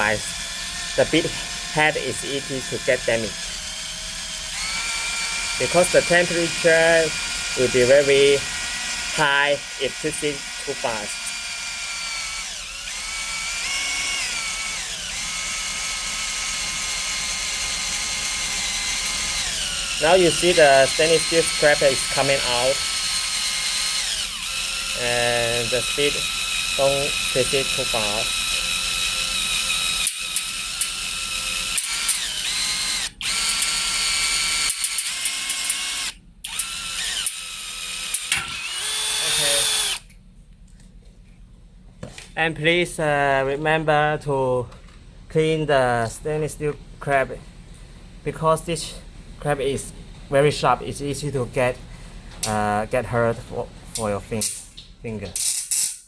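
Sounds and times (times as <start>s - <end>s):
electric drill boring into metal: 0.0s - 40.1s.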